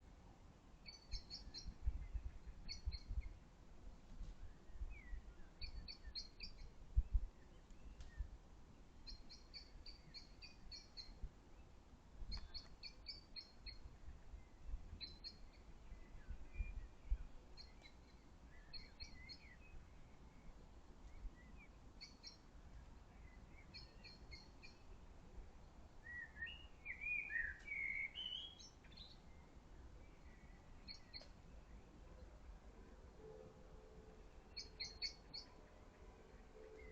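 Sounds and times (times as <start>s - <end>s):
faint low rumble: 0.0s - 26.0s
small birds chirping: 0.8s - 3.4s, 4.2s - 8.4s, 9.0s - 25.1s, 26.0s - 31.9s, 34.5s - 35.6s.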